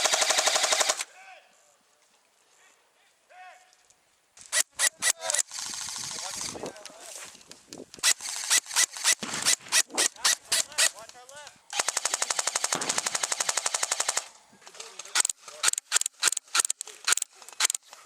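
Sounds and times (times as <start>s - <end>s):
airsoft gun full-auto burst: 0.0s - 1.1s, 4.5s - 6.6s, 8.0s - 11.0s, 11.7s - 14.4s
airsoft gun single shots: 8.5s - 10.9s, 12.6s - 14.2s.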